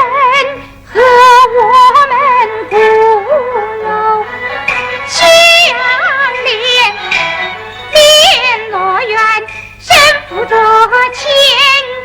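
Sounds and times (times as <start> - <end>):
high female voice singing opera: 0.0 - 4.4, 5.0 - 12.0
orchestra: 4.1 - 8.8.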